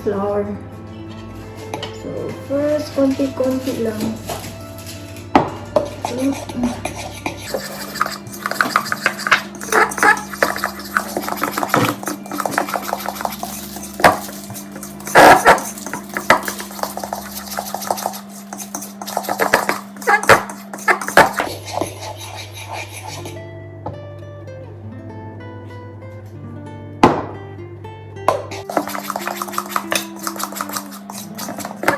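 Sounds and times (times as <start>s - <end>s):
background music: 0.0s - 17.7s
utensil scraping a mixing bowl: 1.1s - 5.1s, 5.7s - 23.4s, 28.5s - 31.9s.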